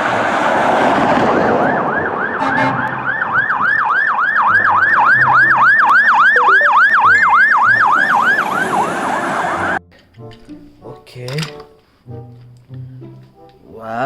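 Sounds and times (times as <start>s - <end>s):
toy fire engine siren: 1.3s - 9.8s.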